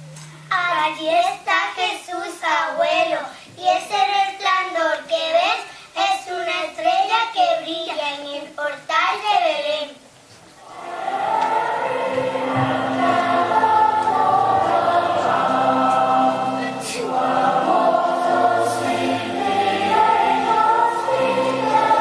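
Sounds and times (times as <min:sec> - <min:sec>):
children's choir singing: 0:10.6 - 0:22.0
instrumental accompaniment: 0:10.6 - 0:22.0.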